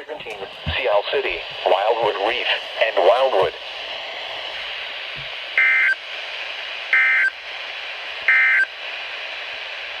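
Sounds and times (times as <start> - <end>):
radio hiss: 0.0 - 10.0.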